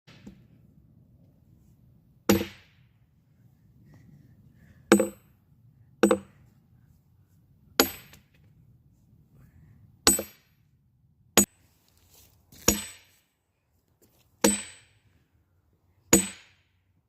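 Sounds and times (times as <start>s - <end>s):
hammer striking steel splitting wedge: 2.3s - 2.7s, 4.9s - 5.2s, 7.8s - 8.2s, 10.1s - 10.5s, 12.7s - 13.1s, 14.4s - 14.9s, 16.2s - 16.6s.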